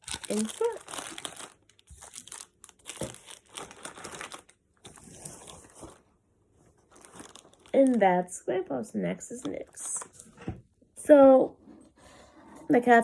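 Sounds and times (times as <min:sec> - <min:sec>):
plastic wrappers crinkling: 0:00.0 - 0:06.1, 0:06.7 - 0:08.3, 0:09.2 - 0:10.3.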